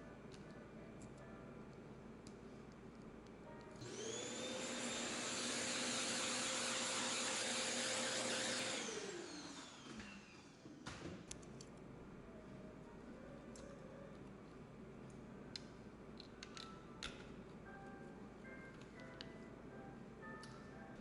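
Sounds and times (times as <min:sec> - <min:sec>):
small electric motor whining: 0:03.8 - 0:10.6.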